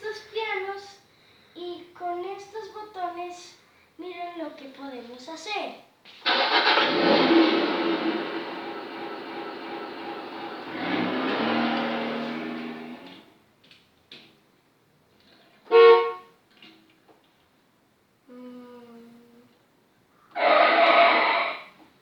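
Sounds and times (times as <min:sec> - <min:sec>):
recorded car sound effects: 0:06.2 - 0:13.3
loud horn-like honk: 0:15.7 - 0:16.3.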